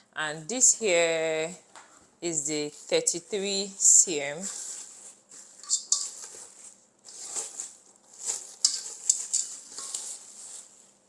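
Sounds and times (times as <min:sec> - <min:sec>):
metal pots and lids clinking: 0:05.6 - 0:06.4, 0:08.5 - 0:10.2.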